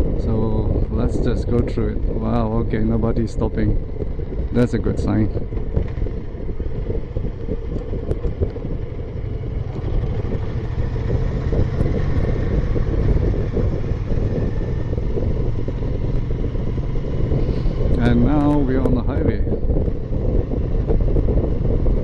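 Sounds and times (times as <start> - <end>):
motorcycle engine running: 0.0 - 22.0
wind rumble on microphone: 0.0 - 22.0.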